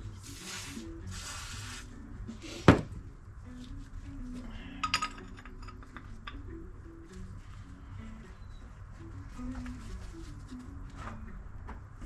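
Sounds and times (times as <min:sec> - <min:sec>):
background music with stepping melody: 0:00.0 - 0:12.0
light metallic clinks of parts: 0:04.8 - 0:06.4.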